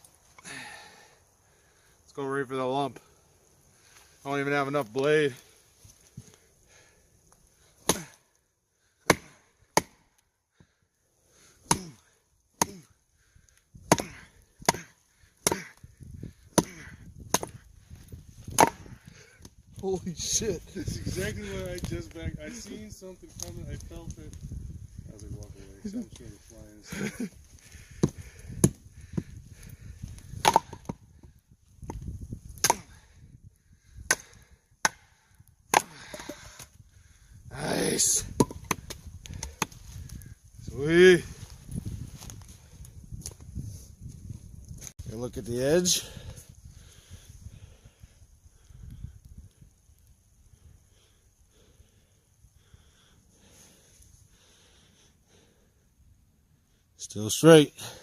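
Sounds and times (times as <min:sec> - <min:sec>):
wood cracking and splitting: 0:04.7 - 0:10.8, 0:11.4 - 0:20.0, 0:25.2 - 0:33.0, 0:33.7 - 0:37.2, 0:38.3 - 0:40.3.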